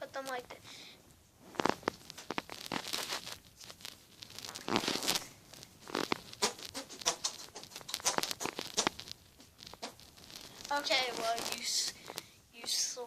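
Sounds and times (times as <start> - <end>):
wet hands squelching: 4.5 - 9.0.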